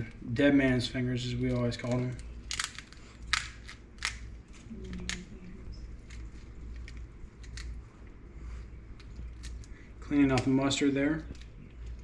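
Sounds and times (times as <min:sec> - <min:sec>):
crab shell cracking: 0:01.8 - 0:05.3, 0:06.0 - 0:07.8, 0:09.0 - 0:09.8.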